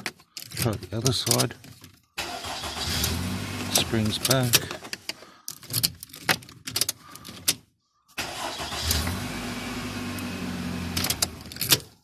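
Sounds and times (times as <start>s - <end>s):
car engine starting and idling: 2.2s - 4.9s, 8.2s - 11.9s.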